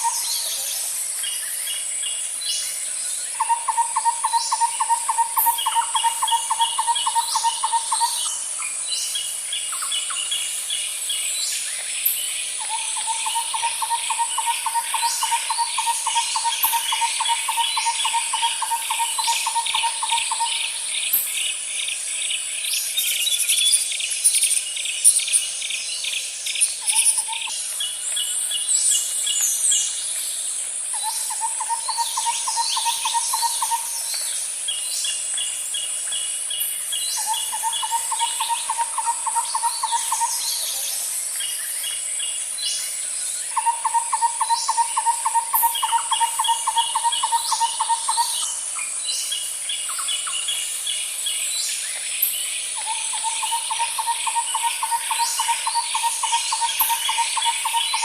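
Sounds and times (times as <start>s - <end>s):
bird chirps and calls: 3.2s - 10.5s, 11.7s - 21.4s, 30.9s - 34.3s, 37.0s - 42.8s, 43.5s - 58.0s.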